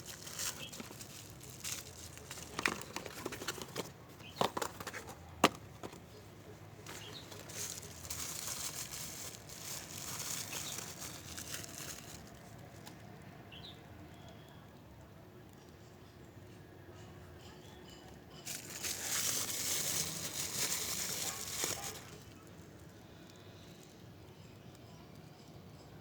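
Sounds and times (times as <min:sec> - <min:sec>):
packaging clicks and taps: 0:00.0 - 0:13.0
wrapping rustling and crinkling: 0:00.0 - 0:13.1, 0:18.4 - 0:23.9.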